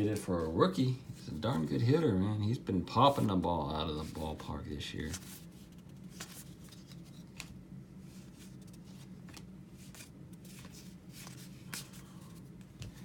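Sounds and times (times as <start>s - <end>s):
low steady hum: 0.0s - 13.0s
trading cards sliding and flicking: 5.1s - 13.0s.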